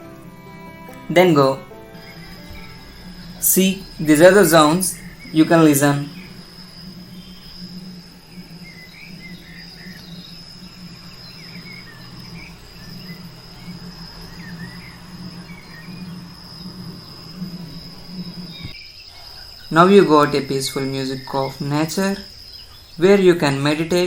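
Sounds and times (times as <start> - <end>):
low steady hum: 0.0 - 18.8
crickets chirping: 0.0 - 24.0.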